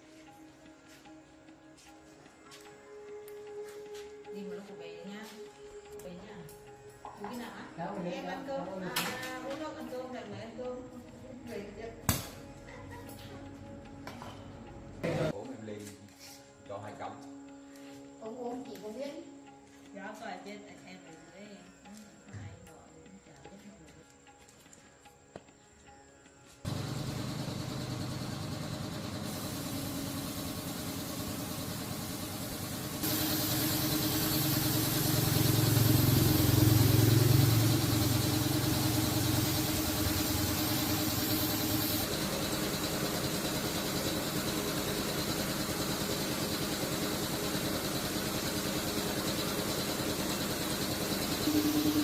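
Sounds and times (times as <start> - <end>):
engine idling: 26.7 - 52.0.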